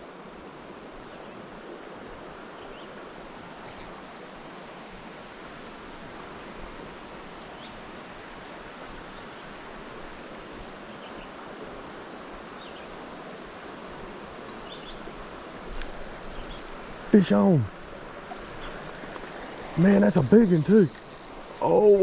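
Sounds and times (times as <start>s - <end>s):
creek water rushing: 15.0s - 22.0s.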